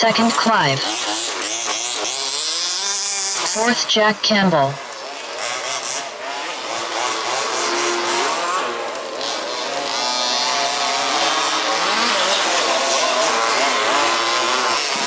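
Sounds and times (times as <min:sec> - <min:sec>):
rc car engines racing: 0:00.0 - 0:15.0.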